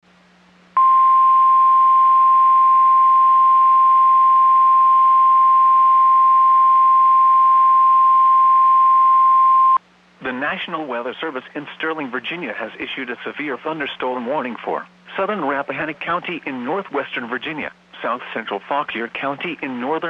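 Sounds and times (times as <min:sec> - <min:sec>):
faint hum: 0:00.1 - 0:20.0
high warning alarm tone: 0:00.8 - 0:09.8.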